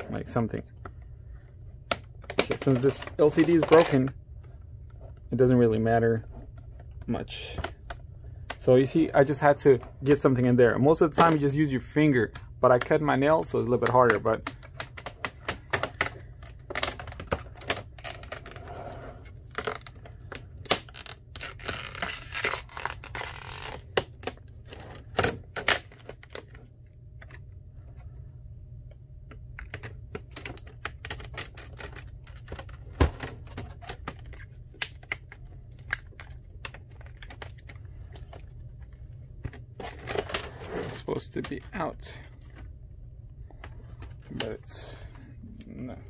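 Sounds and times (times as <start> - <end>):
plastic scraping: 29.3 - 42.7.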